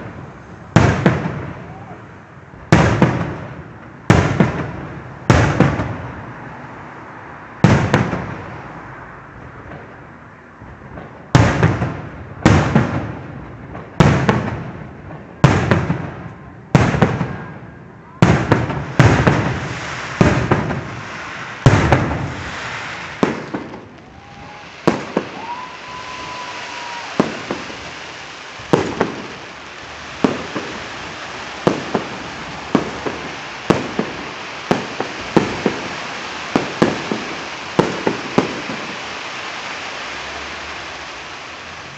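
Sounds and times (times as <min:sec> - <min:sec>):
firework crackling pops: 0:00.0 - 0:02.0, 0:02.7 - 0:06.6, 0:07.6 - 0:10.2, 0:10.8 - 0:17.6, 0:18.2 - 0:41.9
firework whistle: 0:00.8 - 0:02.2, 0:16.3 - 0:41.9.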